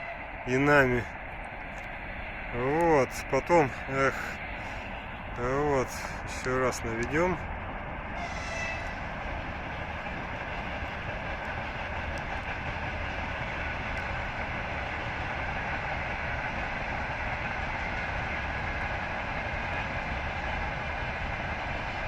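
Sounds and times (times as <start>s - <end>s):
faint whine: 0.0s - 12.3s.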